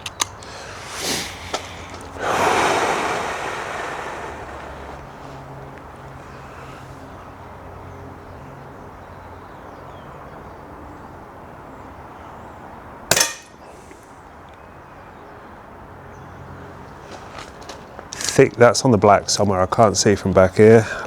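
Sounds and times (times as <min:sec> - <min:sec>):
air pistol shot: 0:13.1 - 0:13.5.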